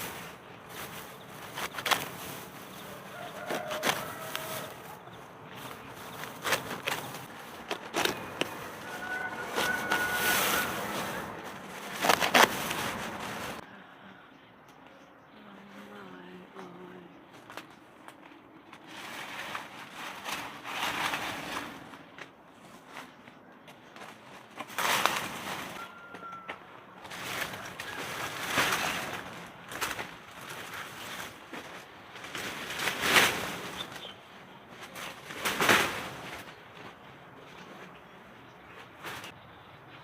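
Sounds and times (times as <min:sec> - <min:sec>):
dry material rustling: 0:00.0 - 0:13.6, 0:18.7 - 0:22.2.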